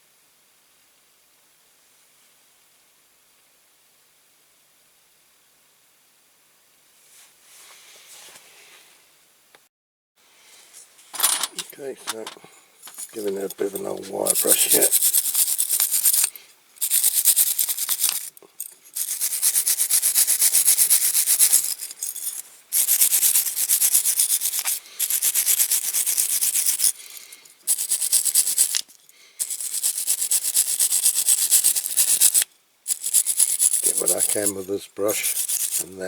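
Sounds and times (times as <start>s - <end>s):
wire brush scrubbing metal: 11.2s - 36.0s.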